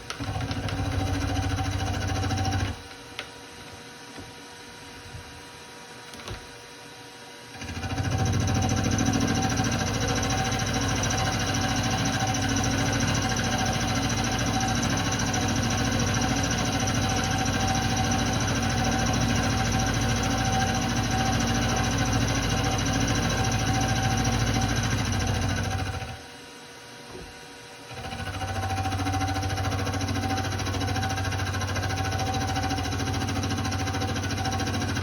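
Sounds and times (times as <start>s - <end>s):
milling machine running: 7.6s - 26.3s.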